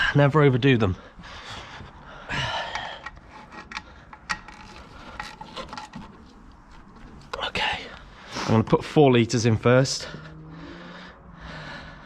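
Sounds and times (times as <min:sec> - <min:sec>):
clicks and knocks of parts: 0:02.6 - 0:06.4.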